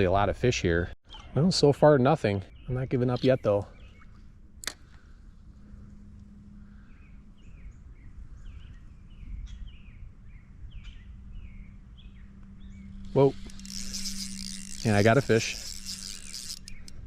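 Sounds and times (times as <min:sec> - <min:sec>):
songbird chirping: 0:01.1 - 0:04.3, 0:06.6 - 0:17.0
low outdoor noise by a creek: 0:13.0 - 0:16.9.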